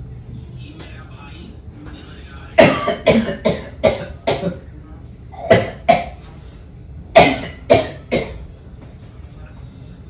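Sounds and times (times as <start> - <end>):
man fake coughing: 2.6 - 4.6, 7.2 - 8.4.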